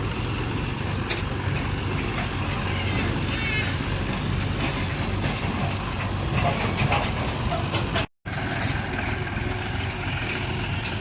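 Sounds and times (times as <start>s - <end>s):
diesel engine running: 0.0s - 11.0s
metallic clicks and clanks: 4.0s - 8.7s.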